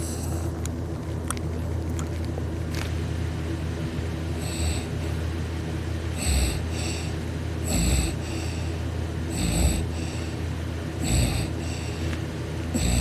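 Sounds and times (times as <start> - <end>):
steady low hum: 0.0 - 13.0
person snoring loudly: 4.4 - 4.9, 6.2 - 8.7, 9.3 - 10.4, 11.0 - 12.0, 12.7 - 13.0.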